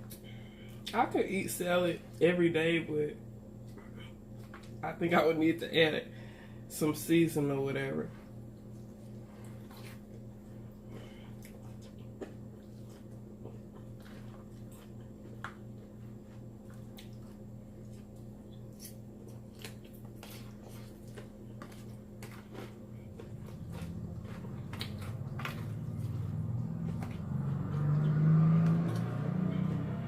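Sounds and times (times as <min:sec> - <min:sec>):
steady low hum: 0:00.0 - 0:30.0
wet chewing mouth clicks: 0:16.7 - 0:17.3, 0:18.5 - 0:27.2
low rumble: 0:22.9 - 0:30.0.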